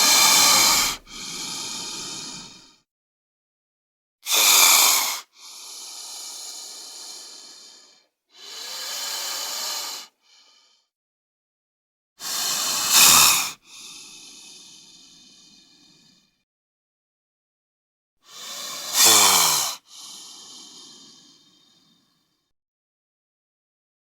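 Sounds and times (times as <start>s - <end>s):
snake hissing: 0.0s - 2.8s, 4.3s - 10.1s, 12.2s - 16.0s, 18.3s - 22.0s.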